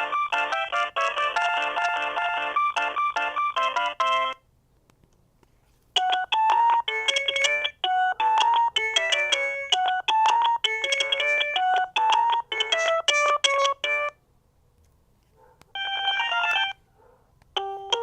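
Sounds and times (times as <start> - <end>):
mobile phone ringtone melody: 0.0 - 4.4, 6.0 - 14.2, 15.8 - 16.8, 17.6 - 18.0
bright ringtone notes: 6.0 - 14.2, 15.8 - 16.8, 17.6 - 18.0.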